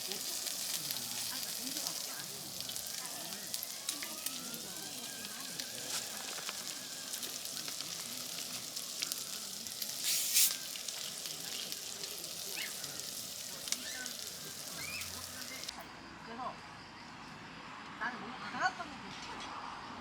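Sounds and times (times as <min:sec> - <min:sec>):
food sizzling in a pan: 0:00.0 - 0:15.8.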